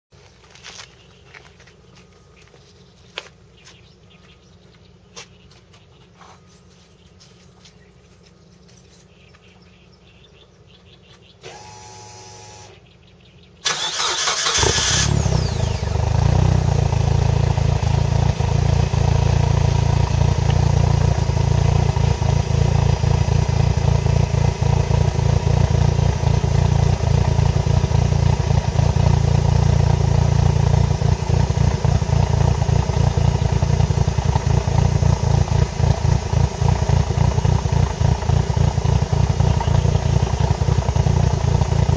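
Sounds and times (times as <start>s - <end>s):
brief whine: 11.4s - 12.8s
car engine idling loudly: 13.9s - 41.9s.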